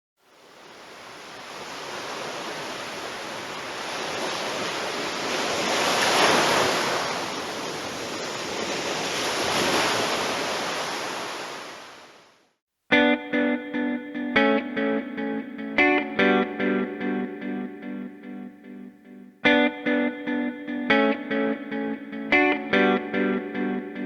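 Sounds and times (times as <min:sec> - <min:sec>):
ocean waves washing in: 0:00.2 - 0:12.5.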